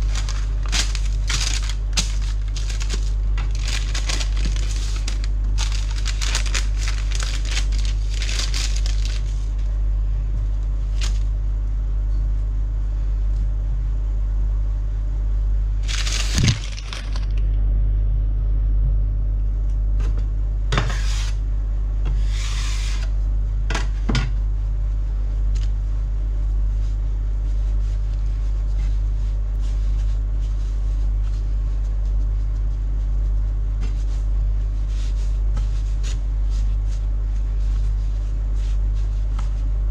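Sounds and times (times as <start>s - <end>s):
rustling: 0.0s - 9.7s
steady low hum: 0.0s - 39.9s.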